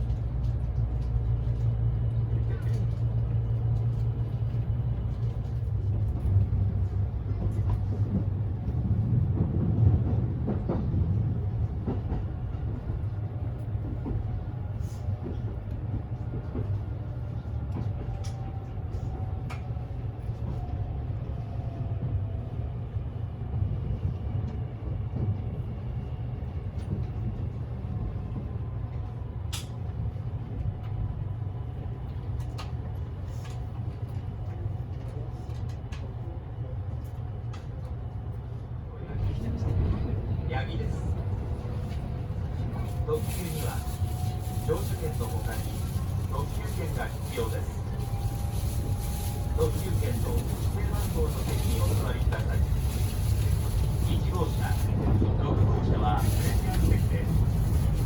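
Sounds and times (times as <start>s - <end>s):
train cabin low rumble: 0.0s - 58.0s.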